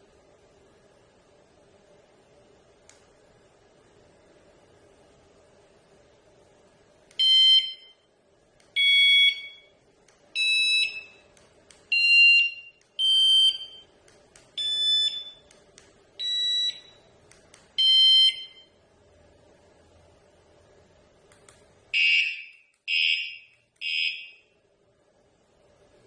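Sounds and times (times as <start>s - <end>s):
bike alarm siren blasts: 11.9s - 13.8s, 22.0s - 24.4s.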